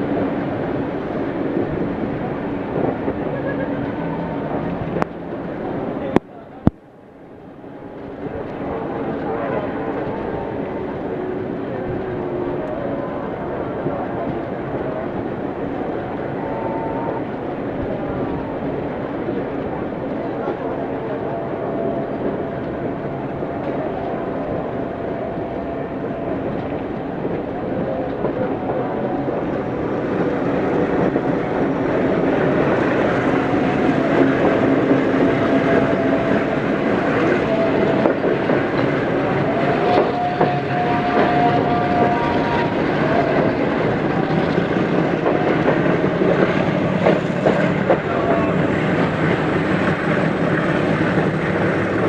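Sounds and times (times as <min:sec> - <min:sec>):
train wheels clattering: 0:16.2 - 0:52.0.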